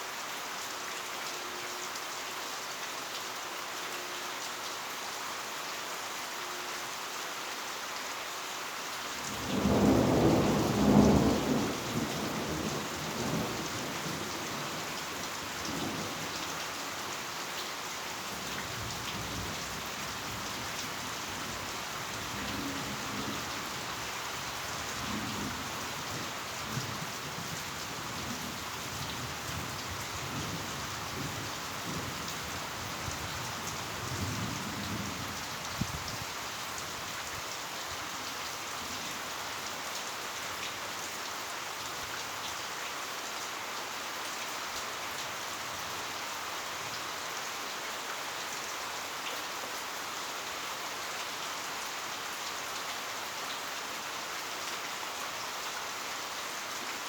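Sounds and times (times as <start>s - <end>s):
heavy rain: 0.0s - 57.0s
thunder rumbling: 9.5s - 13.6s.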